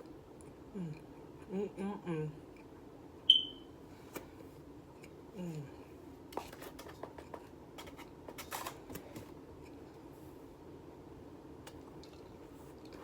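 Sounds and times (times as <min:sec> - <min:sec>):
person humming: 0:00.7 - 0:02.4, 0:05.4 - 0:05.9.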